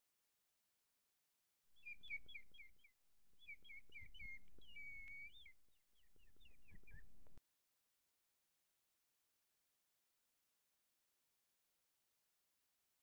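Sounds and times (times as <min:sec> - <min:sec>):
bird chirping: 0:01.8 - 0:07.4.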